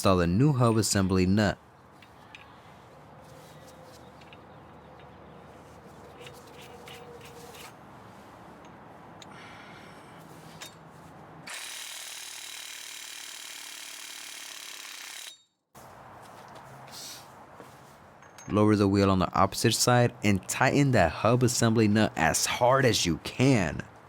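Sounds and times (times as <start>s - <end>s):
impact wrench running: 11.5s - 15.4s.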